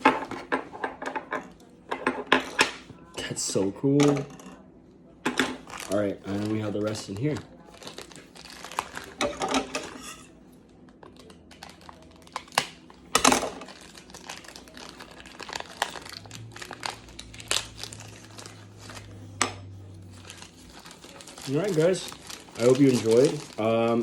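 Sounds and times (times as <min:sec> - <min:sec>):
packaging crinkling and rustling: 0:05.5 - 0:10.0, 0:10.7 - 0:19.2, 0:20.0 - 0:24.0.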